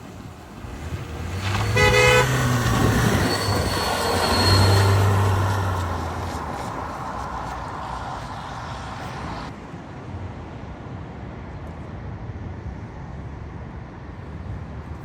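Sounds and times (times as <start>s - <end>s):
car engine rumbling: 0.0s - 9.5s.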